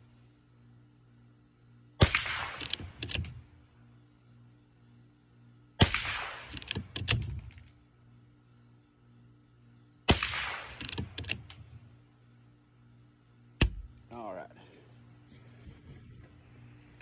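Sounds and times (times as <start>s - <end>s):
rifle shots: 2.0s - 3.4s, 5.8s - 7.5s, 10.1s - 11.4s.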